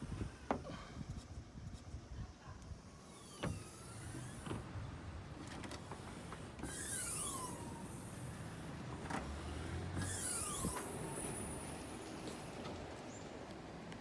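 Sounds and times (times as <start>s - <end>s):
car hatch moving with hiss: 3.0s - 13.2s.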